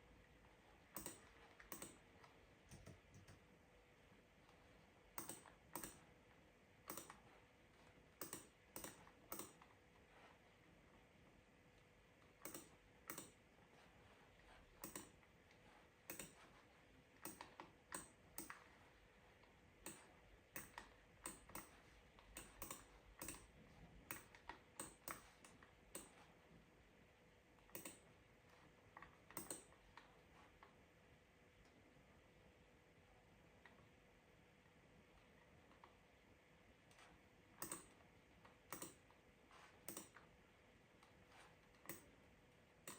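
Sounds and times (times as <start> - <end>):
faint steady hum: 0.0 - 42.9
computer keyboard typing: 1.0 - 2.1, 2.7 - 3.4, 5.2 - 6.1, 6.9 - 7.2, 8.2 - 9.7, 12.4 - 13.4, 14.8 - 15.2, 16.1 - 16.5, 17.2 - 18.7, 19.8 - 26.2, 27.7 - 28.1, 29.3 - 29.7, 37.6 - 38.0, 38.7 - 39.0, 39.8 - 40.3.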